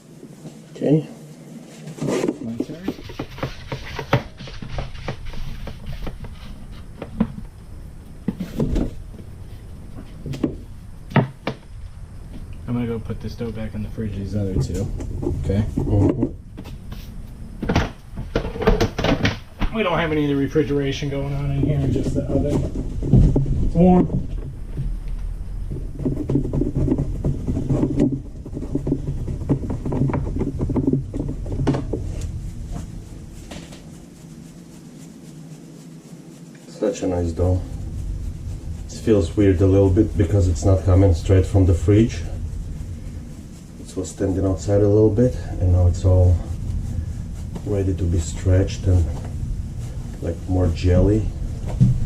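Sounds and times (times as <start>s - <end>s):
steady low hum: 0.0s - 52.0s
kitchen knocks and clunks: 2.2s - 6.4s, 10.2s - 11.7s, 17.6s - 19.8s
low background rumble: 2.4s - 52.0s.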